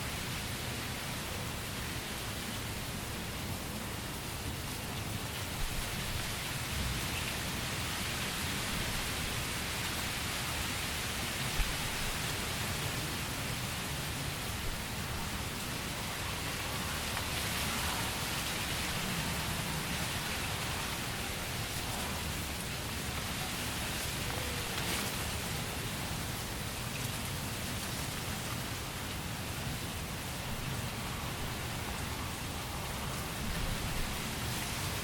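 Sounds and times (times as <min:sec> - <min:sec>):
rain on a tent: 0:00.0 - 0:35.0.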